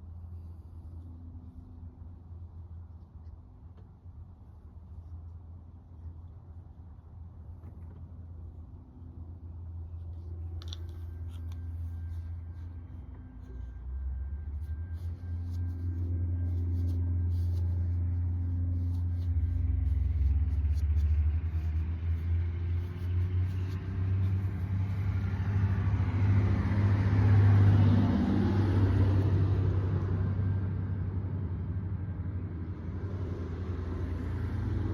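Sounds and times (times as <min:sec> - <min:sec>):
steady hum: 0:00.0 - 0:34.3
motor vehicle rumble: 0:00.0 - 0:34.9.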